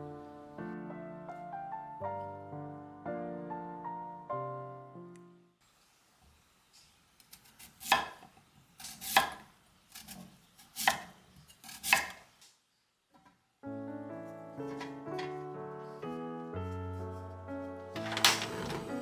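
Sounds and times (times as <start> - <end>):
knife chopping on cutting board: 7.6 - 8.2, 8.8 - 9.4, 10.8 - 12.2
background music chord: 13.6 - 19.0.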